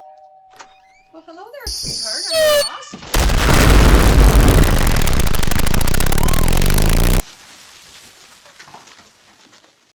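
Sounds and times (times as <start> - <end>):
explosion rumble and crackle: 3.2 - 7.2.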